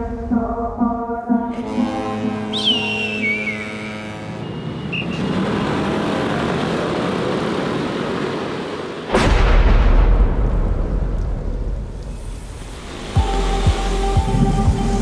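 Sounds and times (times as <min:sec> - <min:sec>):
thunderclap and deep rumble: 0:09.1 - 0:12.5
steady hiss: 0:11.8 - 0:15.0.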